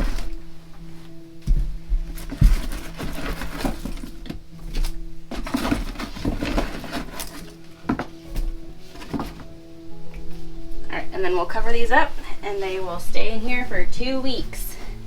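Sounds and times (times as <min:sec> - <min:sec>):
sweet potatoes knocking and thudding: 0:01.4 - 0:09.5.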